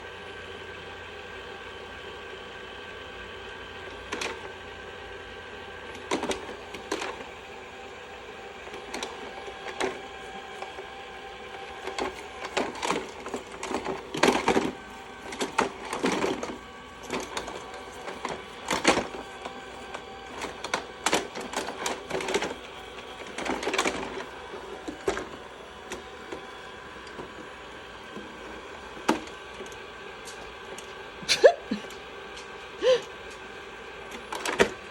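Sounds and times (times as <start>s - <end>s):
robot vacuum motor hum: 0.0s - 34.9s
robot vacuum clicking and clattering: 4.1s - 4.5s, 5.9s - 7.3s, 11.6s - 27.5s, 34.1s - 34.9s.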